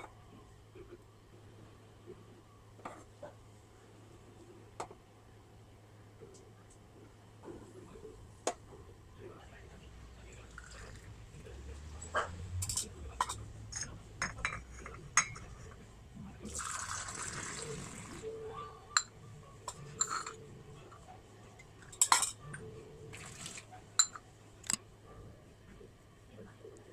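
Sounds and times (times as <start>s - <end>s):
tea pouring: 10.4s - 11.1s, 16.4s - 18.2s, 23.1s - 24.1s
dishes and utensils clinking: 12.0s - 15.8s, 18.9s - 21.0s, 21.6s - 22.7s, 23.9s - 24.8s.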